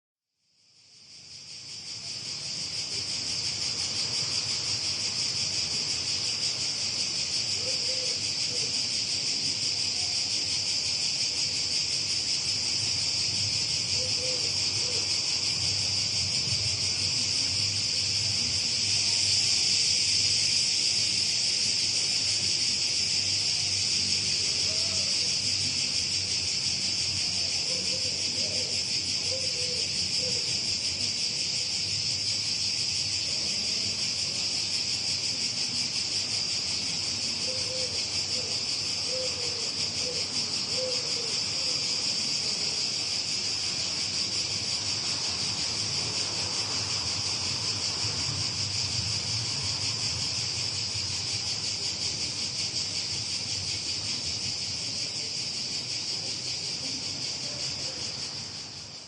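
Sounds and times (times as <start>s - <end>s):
insects chirring: 0.6s - 59.0s.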